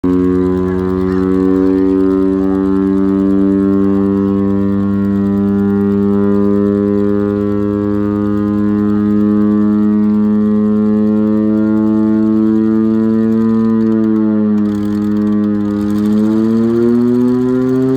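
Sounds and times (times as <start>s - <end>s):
air raid siren wailing: 0.0s - 17.9s
engine drone: 0.0s - 17.9s.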